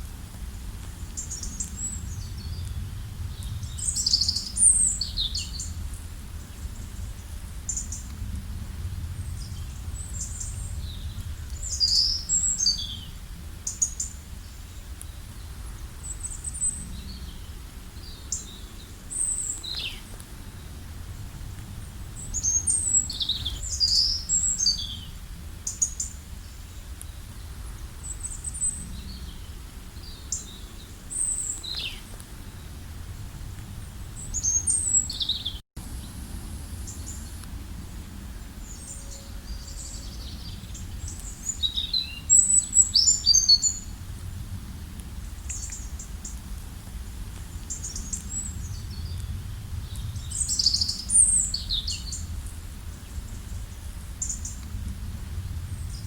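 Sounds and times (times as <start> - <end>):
steady low rumble: 0.0 - 25.6, 26.2 - 42.9, 43.7 - 56.0
songbirds chirping and singing: 22.2 - 32.7.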